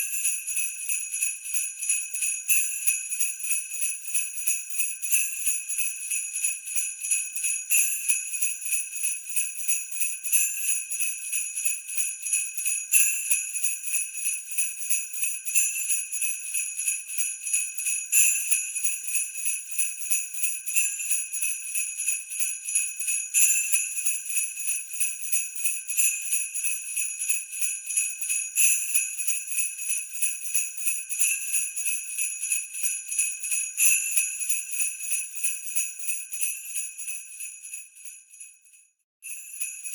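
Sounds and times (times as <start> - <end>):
sleigh bells jingling: 15.2 - 37.4, 39.2 - 39.9.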